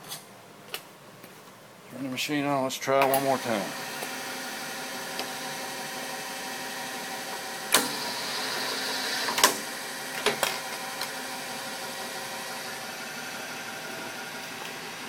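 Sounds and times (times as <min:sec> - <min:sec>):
can seamer humming: 0:03.0 - 0:15.0.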